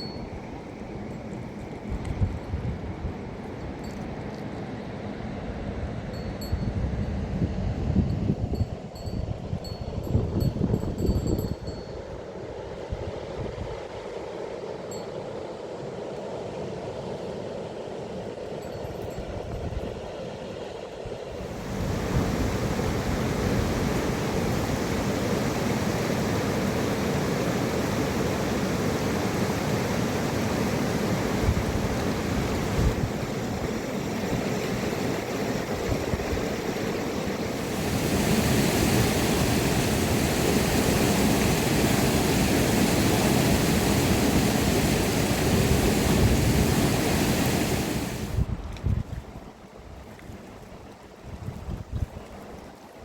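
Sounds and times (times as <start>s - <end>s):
river water rushing: 21.4s - 48.4s.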